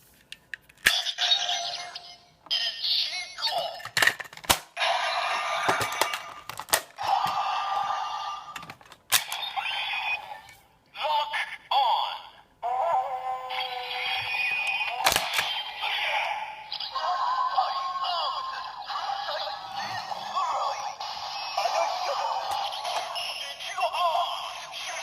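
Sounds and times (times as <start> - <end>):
electronic music from toy speaker: 12.7 - 25.0.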